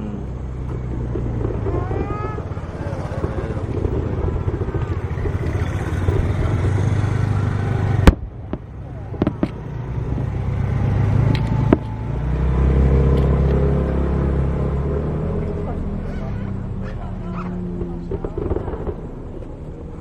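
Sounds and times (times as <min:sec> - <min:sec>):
vehicle engines rumbling: 0:00.0 - 0:20.0
small firework pops: 0:08.0 - 0:10.3, 0:17.7 - 0:19.6
voices in the background: 0:15.3 - 0:20.0.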